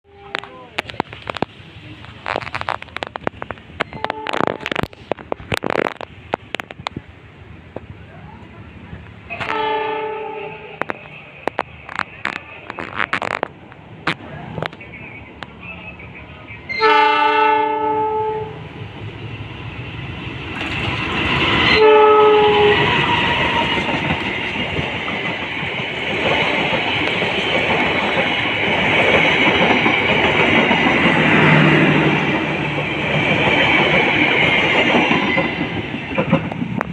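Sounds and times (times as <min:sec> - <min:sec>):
train rumbling on rails: 0:00.0 - 0:36.9
locomotive horn blasts: 0:03.9 - 0:04.7, 0:09.3 - 0:10.8, 0:16.7 - 0:18.6, 0:21.7 - 0:23.4.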